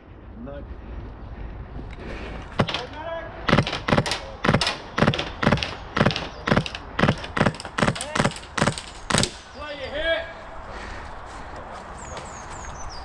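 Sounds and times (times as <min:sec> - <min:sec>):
sharp thumps: 0:02.5 - 0:09.5.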